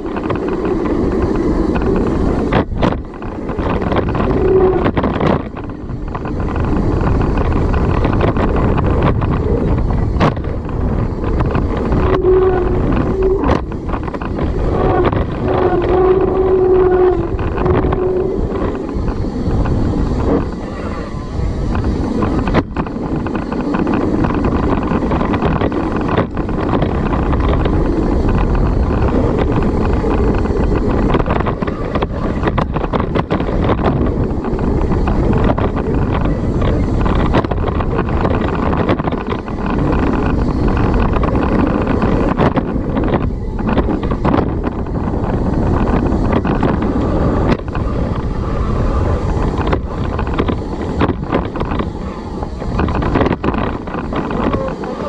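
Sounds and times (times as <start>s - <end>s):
tyre and trail noise: 0.0s - 55.0s
wind buffeting microphone: 0.0s - 55.0s
bike rattling clicks and knocks: 21.7s - 55.0s.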